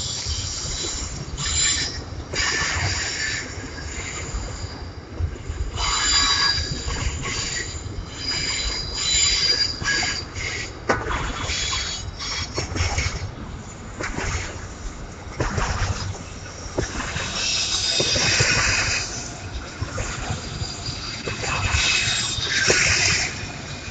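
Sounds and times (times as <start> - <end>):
train rumble: 0.0 - 23.9
train wheels squealing on rails: 0.0 - 23.9.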